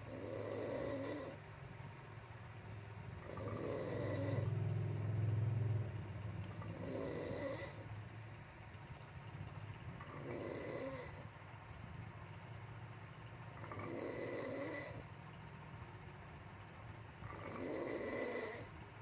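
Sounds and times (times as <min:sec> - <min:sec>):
person snoring: 0:00.0 - 0:01.4, 0:03.2 - 0:04.5, 0:10.0 - 0:11.2, 0:13.6 - 0:15.0, 0:17.2 - 0:18.7.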